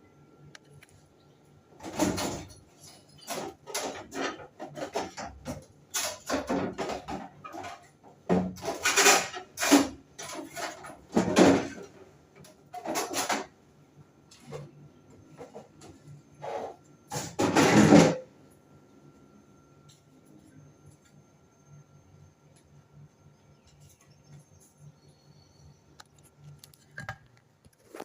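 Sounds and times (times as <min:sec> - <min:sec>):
metal air conditioner parts scraping: 0:01.7 - 0:13.6, 0:14.2 - 0:18.3.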